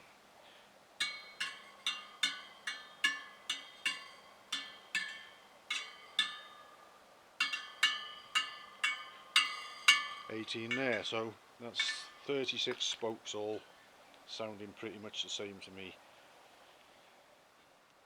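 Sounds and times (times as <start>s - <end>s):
wheel spokes pinging when tapped: 1.0s - 12.8s.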